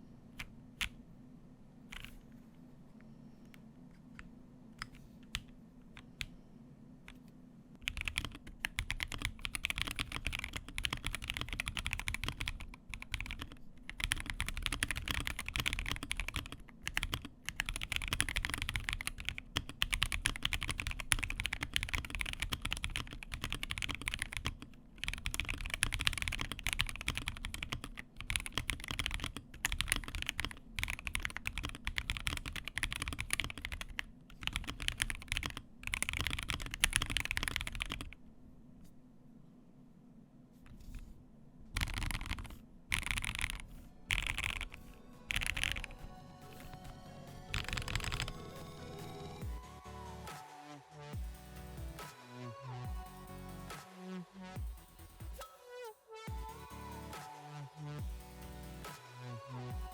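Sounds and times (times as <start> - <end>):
fast typing on mechanical keyboard: 7.8 - 38.2, 41.7 - 46.0, 47.5 - 48.6.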